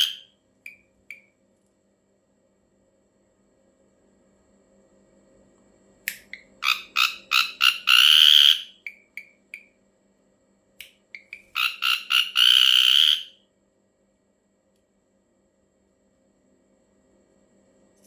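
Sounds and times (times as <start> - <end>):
bird harsh rasping calls: 0.0 - 0.2, 6.6 - 9.1, 11.2 - 13.4.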